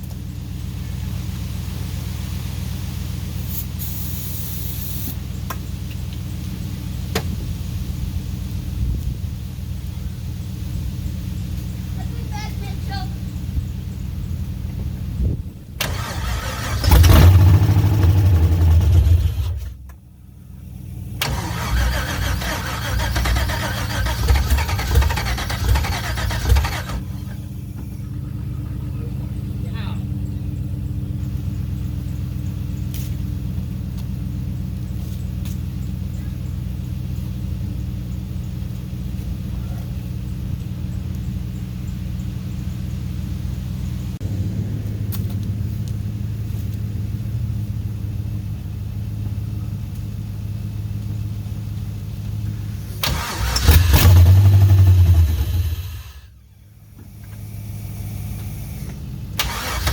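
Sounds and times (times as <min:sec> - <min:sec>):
vehicle engine idling: 0:00.0 - 0:59.9
engine cranking on starter: 0:15.8 - 0:19.8, 0:21.1 - 0:29.5, 0:52.8 - 0:56.3, 0:57.2 - 0:59.9
steady low hum: 0:24.1 - 0:53.1.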